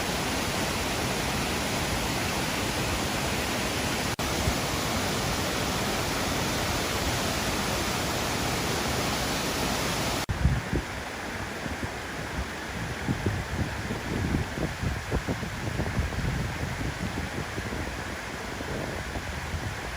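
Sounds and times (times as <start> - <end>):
waterfall rushing: 0.0 - 10.3
wind buffeting microphone: 10.3 - 19.9.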